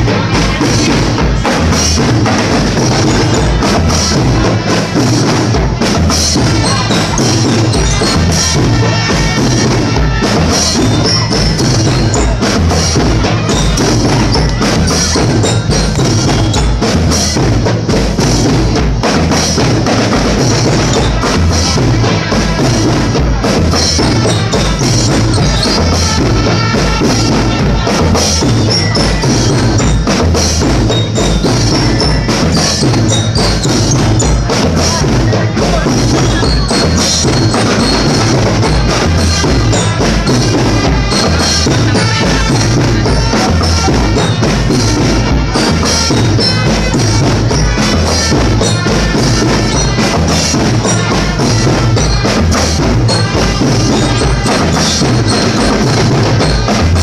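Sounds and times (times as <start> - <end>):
drum-heavy percussion music: 0.0 - 57.0.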